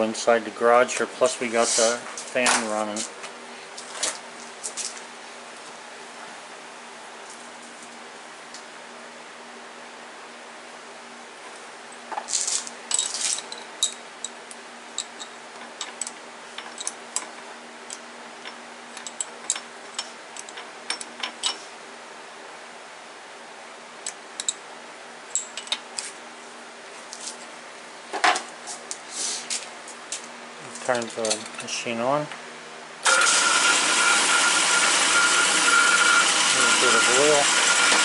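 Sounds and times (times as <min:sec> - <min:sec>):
fan humming: 0:00.0 - 0:38.0
small metal tools clicking and rattling: 0:30.9 - 0:31.7.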